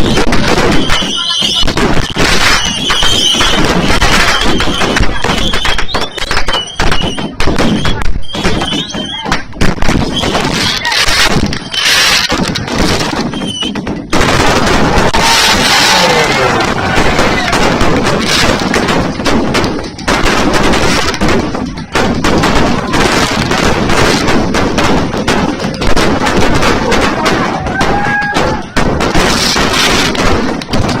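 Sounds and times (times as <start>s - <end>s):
firework whistles: 0.0s - 9.3s, 9.9s - 12.4s, 13.1s - 14.0s
fireworks cracking and banging: 0.0s - 31.0s.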